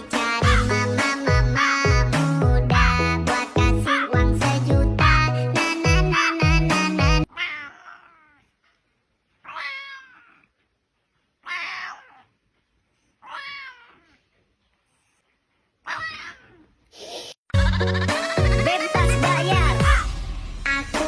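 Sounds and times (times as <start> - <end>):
cat meowing: 7.3 - 8.5, 9.4 - 10.6, 11.4 - 12.4, 13.2 - 14.2, 15.8 - 16.8.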